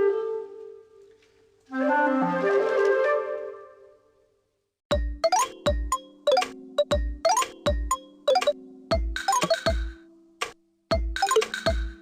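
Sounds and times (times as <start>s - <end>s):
mobile phone ringtone melody: 4.9s - 10.0s.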